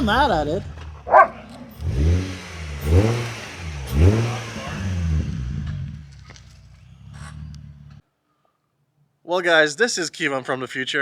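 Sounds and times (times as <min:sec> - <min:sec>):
car engine revving and idling: 0:00.0 - 0:08.0.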